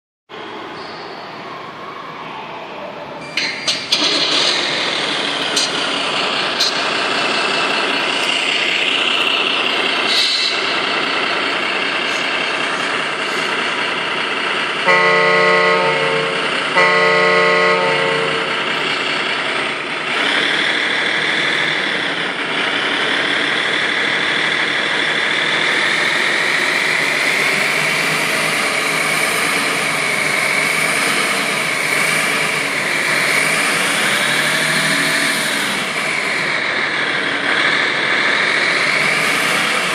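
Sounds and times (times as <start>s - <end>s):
vehicle engine with whine: 0.3s - 39.9s
vehicle horn honks: 14.8s - 18.7s.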